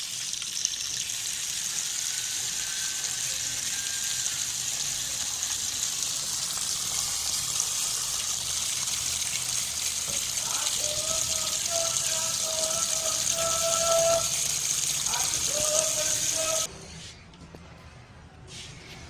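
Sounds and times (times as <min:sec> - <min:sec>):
tap water pouring into vessel: 0:08.2 - 0:10.8.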